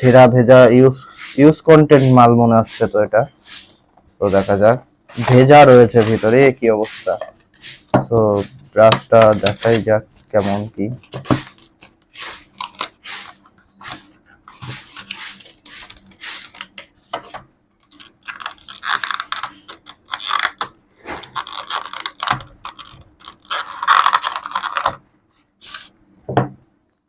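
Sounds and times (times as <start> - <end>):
packaging rustling and crinkling: 8.8 - 25.0.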